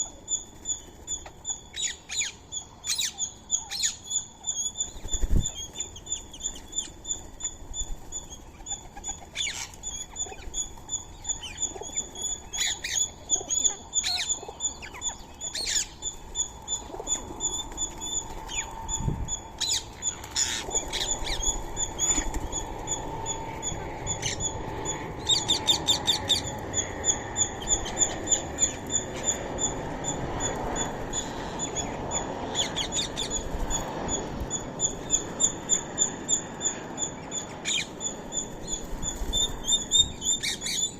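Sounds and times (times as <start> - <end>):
rattling bird calls: 0.0 - 40.9
parrots squawking: 8.5 - 16.1, 19.6 - 22.6.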